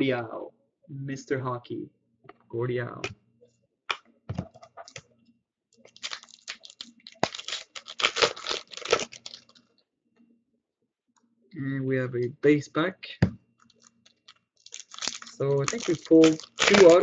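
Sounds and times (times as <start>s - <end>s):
wrapper tearing and crinkling: 5.9s - 9.6s, 13.7s - 17.0s.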